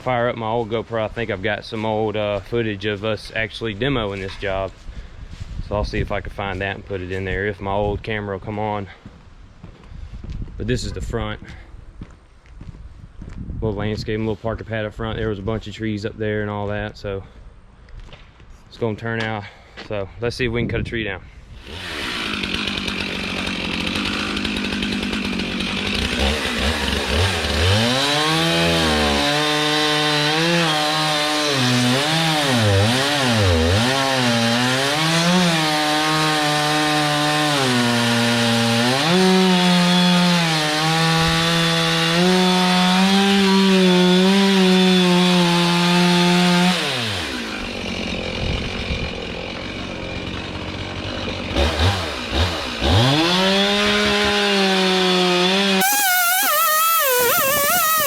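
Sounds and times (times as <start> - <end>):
chainsaw revving and cutting: 21.6 - 58.0.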